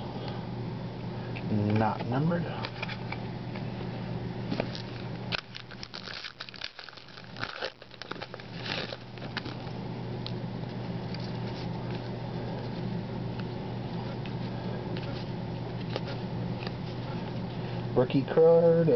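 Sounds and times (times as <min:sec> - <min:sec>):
steady low hum: 0:00.0 - 0:18.9
foil wrapper crinkling and tearing: 0:04.6 - 0:09.7.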